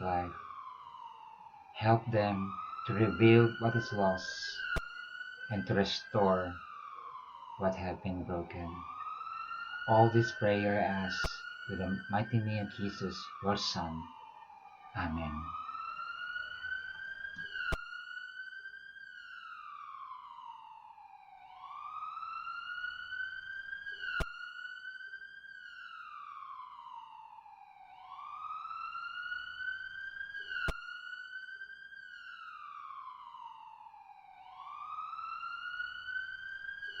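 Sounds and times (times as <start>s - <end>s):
siren wailing: 0.0s - 37.0s.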